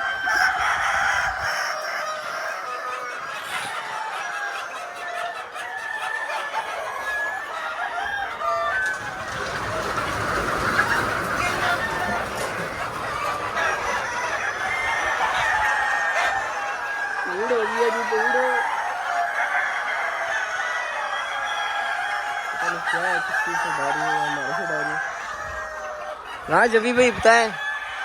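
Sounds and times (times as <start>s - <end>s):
hens clucking: 0.0s - 28.0s.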